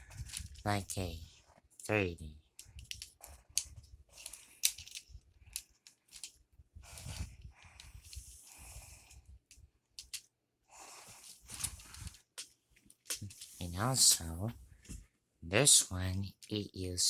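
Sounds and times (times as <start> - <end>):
plastic clicks and scrapes: 2.5 - 8.6
rustling: 10.8 - 15.2.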